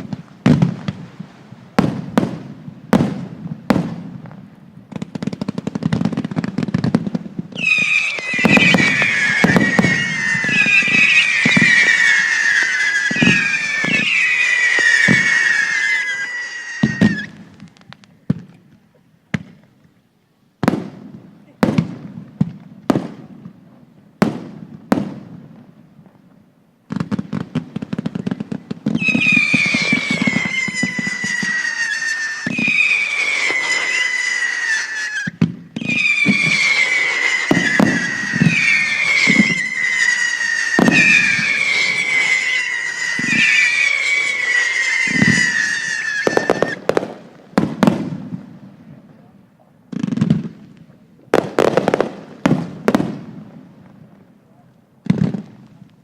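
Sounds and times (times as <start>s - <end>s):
dense firework crackling: 0.0s - 18.5s, 26.9s - 49.3s, 49.9s - 54.4s
firework whistles falling in pitch: 7.5s - 17.4s, 28.9s - 47.0s
firework shell bursts: 7.6s - 17.3s.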